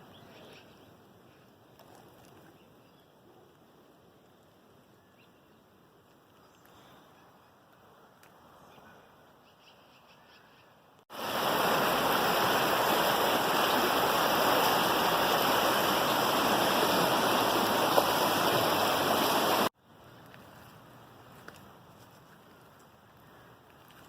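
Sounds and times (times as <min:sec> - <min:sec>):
rushing stream: 0:11.1 - 0:19.8.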